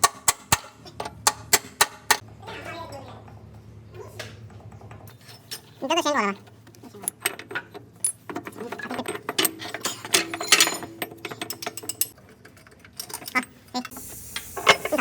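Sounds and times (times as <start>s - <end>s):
metal parts and tools clinking: 5.1s - 15.0s.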